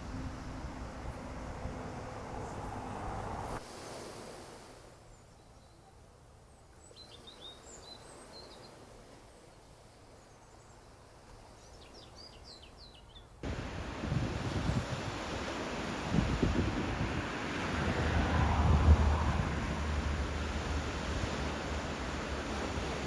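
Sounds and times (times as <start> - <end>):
loud wind: 0.0 - 4.0, 13.4 - 23.0
surf: 13.4 - 23.0.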